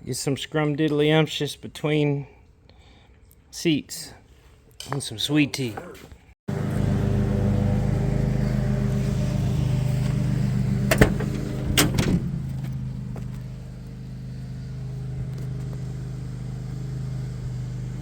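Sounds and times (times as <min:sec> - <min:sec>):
vehicle engine idling: 0:06.5 - 0:18.0
sharp clunks: 0:09.9 - 0:13.2.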